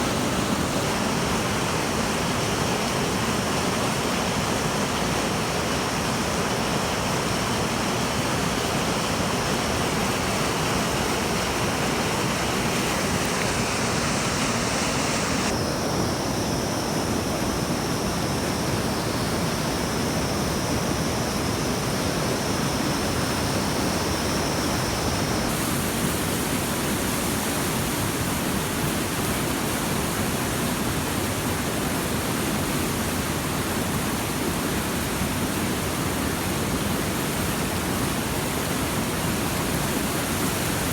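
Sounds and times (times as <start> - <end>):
steady rushing noise: 9.6 - 15.8.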